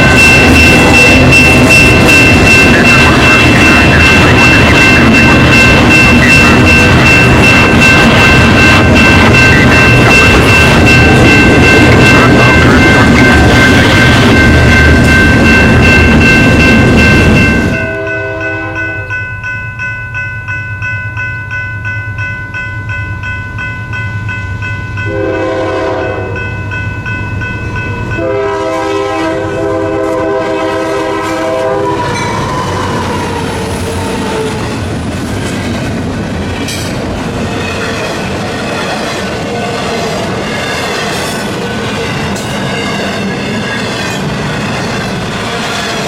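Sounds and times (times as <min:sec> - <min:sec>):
train rumble and wheel noise: 0:00.0 - 0:46.0
train horn blasts: 0:17.7 - 0:19.1, 0:25.1 - 0:26.4, 0:28.1 - 0:33.0.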